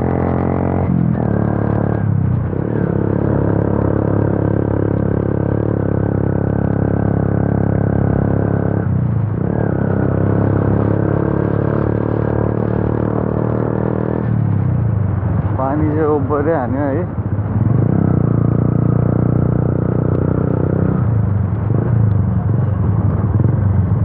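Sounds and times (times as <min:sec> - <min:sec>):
motorcycle engine droning: 0:00.0 - 0:24.0.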